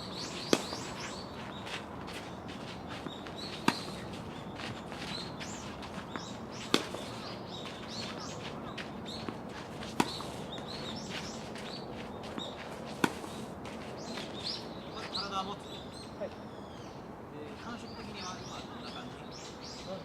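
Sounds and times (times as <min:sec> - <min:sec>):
birds chirping: 0:00.0 - 0:20.0
racket hitting tennis ball: 0:00.3 - 0:01.2, 0:03.0 - 0:04.3, 0:04.9 - 0:07.4, 0:08.0 - 0:14.3
tennis ball bouncing: 0:00.3 - 0:02.2, 0:03.0 - 0:13.5.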